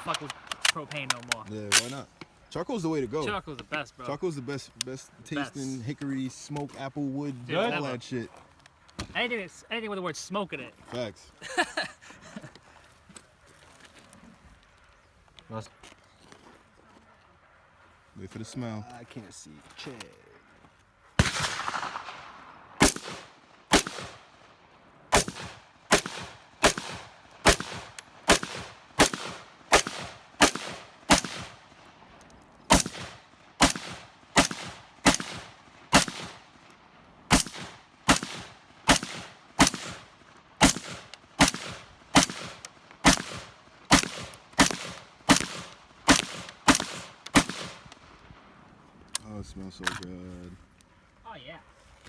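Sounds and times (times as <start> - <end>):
rifle gunshots: 21.2 - 24.4, 25.1 - 31.7, 32.7 - 36.5, 37.3 - 48.0.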